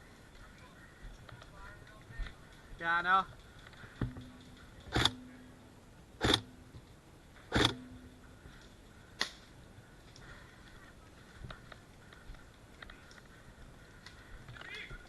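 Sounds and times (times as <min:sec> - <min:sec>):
airsoft gun shots: 0:06.2 - 0:06.5, 0:07.5 - 0:07.9
faint clicks: 0:08.4 - 0:10.4, 0:11.4 - 0:14.9.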